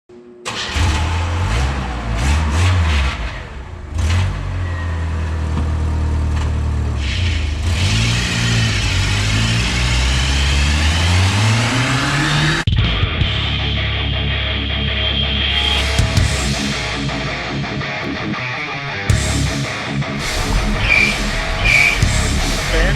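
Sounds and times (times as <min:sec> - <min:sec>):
car engine revving: 0:00.5 - 0:12.7, 0:13.6 - 0:22.9.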